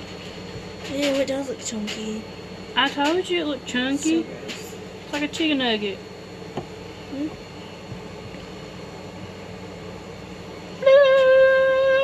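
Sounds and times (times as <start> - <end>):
person holding high note: 10.8 - 12.0.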